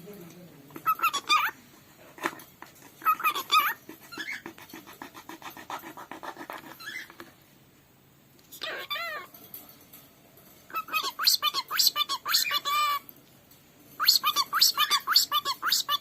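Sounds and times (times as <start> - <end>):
cockatiel chirping: 0.8 - 1.6, 3.0 - 4.8, 6.5 - 7.2, 10.7 - 13.0, 14.0 - 16.0.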